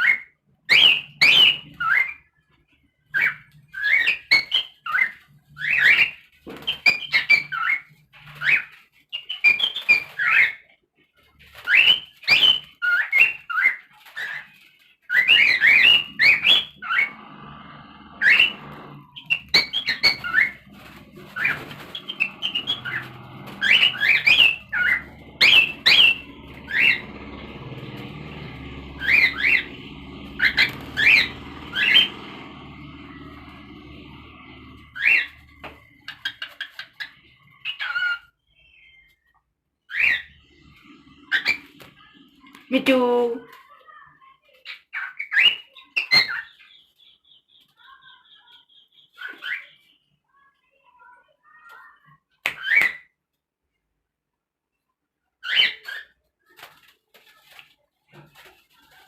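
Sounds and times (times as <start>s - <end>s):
cockatiel whistling: 18.0s - 27.3s.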